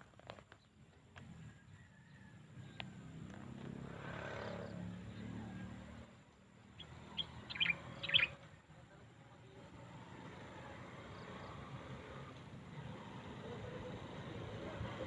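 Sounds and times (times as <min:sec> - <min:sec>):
songbird chirping: 0:00.2 - 0:03.8, 0:04.4 - 0:12.1.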